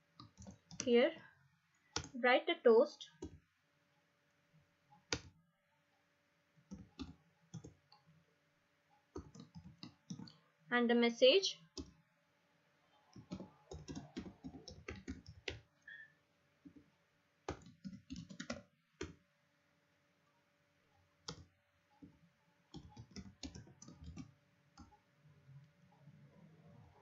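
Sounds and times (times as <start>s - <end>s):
computer keyboard typing: 0.2s - 0.9s, 2.0s - 2.2s, 6.7s - 8.1s, 9.1s - 10.4s, 11.7s - 11.9s, 13.1s - 15.7s, 17.5s - 19.2s, 21.2s - 25.0s.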